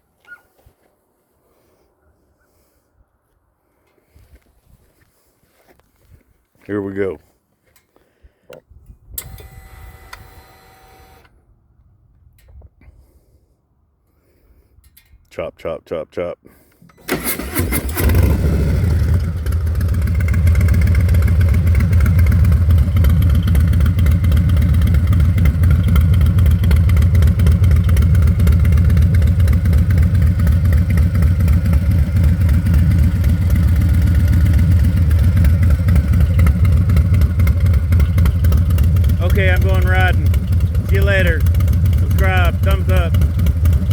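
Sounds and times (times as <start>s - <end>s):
motorcycle engine idling: 18.2s - 43.9s.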